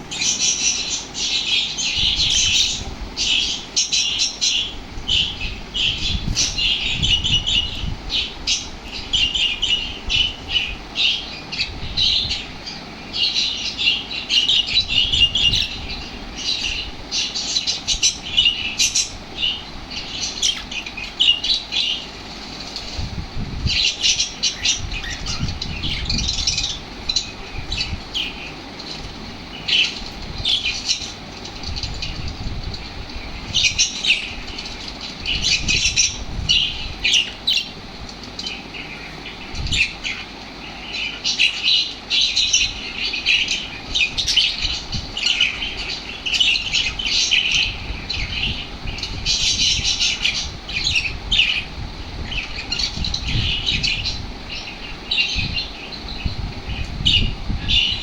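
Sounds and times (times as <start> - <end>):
parrots chirping and squawking: 0.0 - 58.0.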